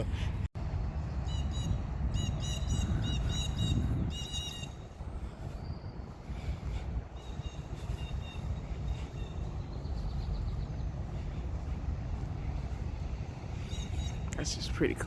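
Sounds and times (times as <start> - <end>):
low outdoor rumble: 0.0 - 15.0
bird chirping: 1.0 - 11.8, 12.5 - 14.8.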